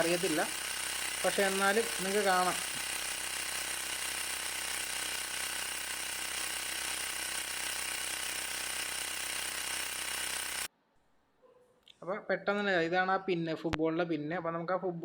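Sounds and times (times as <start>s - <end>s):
electric air compressor running: 0.0s - 10.7s.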